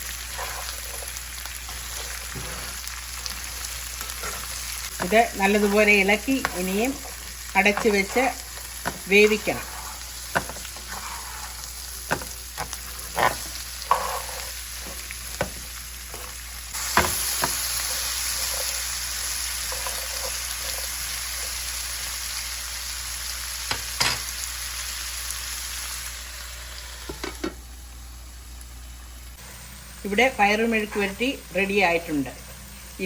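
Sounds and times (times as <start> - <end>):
spatula scraping a pan: 0.0 - 21.7
beans sizzling in oil: 0.0 - 33.0.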